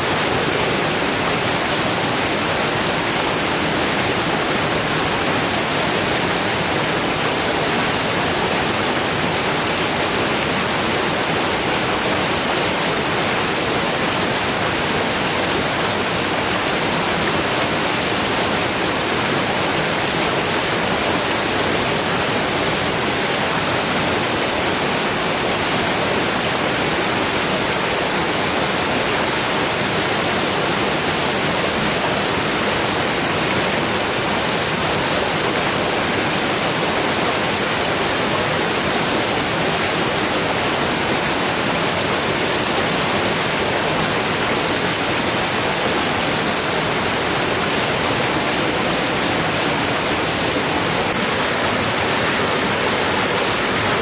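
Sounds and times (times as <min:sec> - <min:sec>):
heavy rain: 0:00.0 - 0:54.0.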